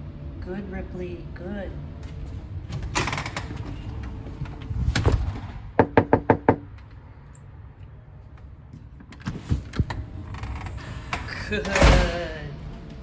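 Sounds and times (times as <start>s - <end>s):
knocks on a door: 5.8s - 6.7s.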